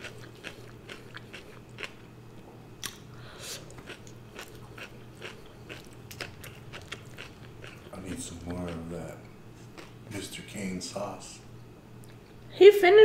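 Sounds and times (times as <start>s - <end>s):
person chewing crunchy food: 0.0s - 10.1s.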